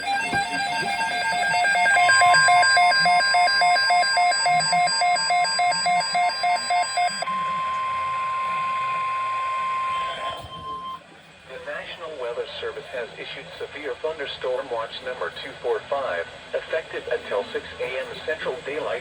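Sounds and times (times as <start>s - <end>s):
rapid electronic beeping: 0.0s - 7.4s
steady high alert tone: 0.0s - 10.9s.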